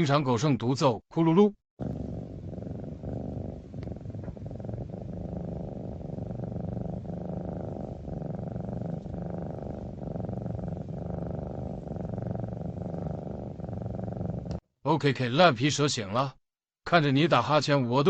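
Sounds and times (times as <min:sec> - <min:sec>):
cat purring: 0:01.8 - 0:14.6.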